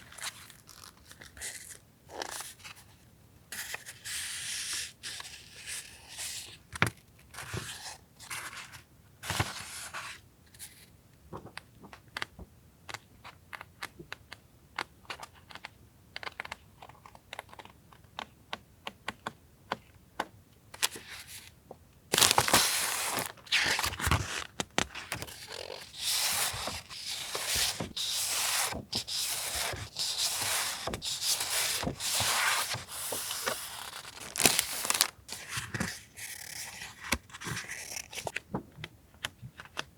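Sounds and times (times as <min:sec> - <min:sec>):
packaging rustling and crinkling: 0:22.1 - 0:38.4.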